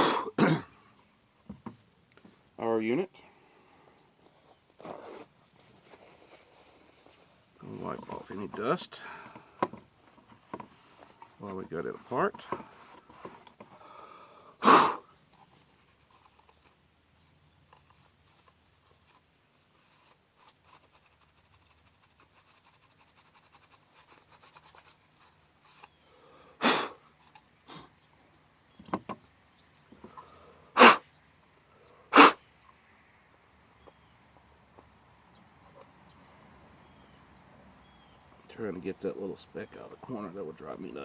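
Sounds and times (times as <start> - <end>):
short puffs of breath: 13.7 - 15.1, 26.0 - 27.9, 30.0 - 31.1, 31.8 - 32.4.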